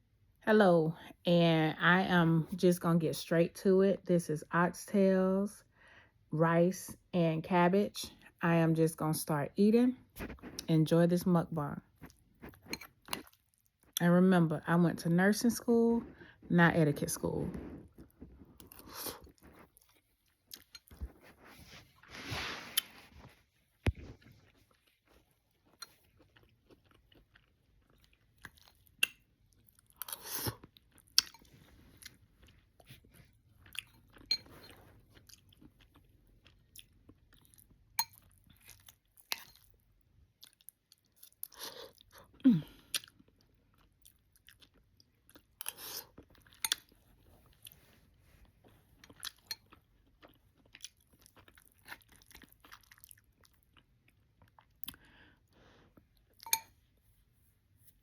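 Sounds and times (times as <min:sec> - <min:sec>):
chewing: 0:17.5 - 0:56.9.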